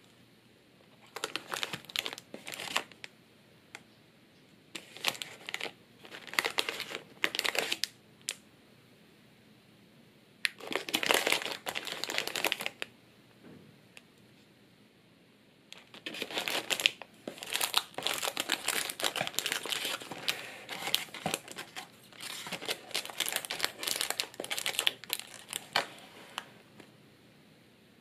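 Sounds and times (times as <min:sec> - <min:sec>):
packaging crinkling: 0:01.0 - 0:03.0, 0:04.8 - 0:08.0, 0:10.5 - 0:12.9, 0:15.8 - 0:26.5.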